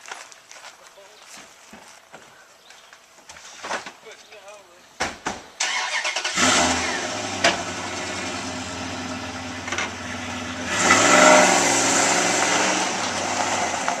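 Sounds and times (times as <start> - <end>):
car engine revving: 5.6 - 14.0.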